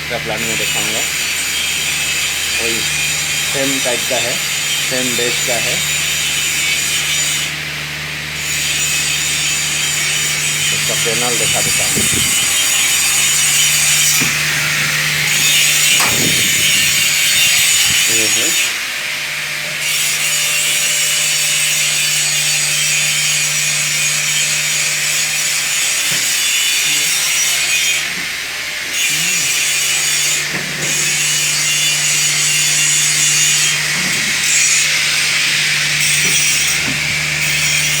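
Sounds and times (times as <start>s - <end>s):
low machinery hum: 0.0s - 18.5s, 30.1s - 38.0s
machinery hissing: 8.3s - 18.6s, 28.8s - 38.0s.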